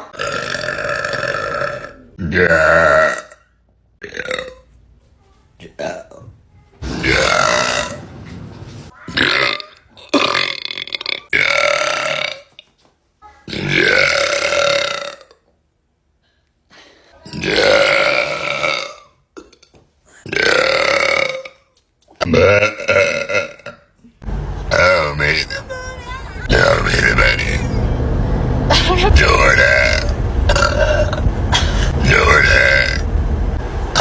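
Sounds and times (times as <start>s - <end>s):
woman burping loudly: 0.0s - 3.4s, 9.2s - 12.5s, 13.5s - 15.4s, 17.2s - 21.6s, 22.2s - 24.0s, 28.7s - 32.0s.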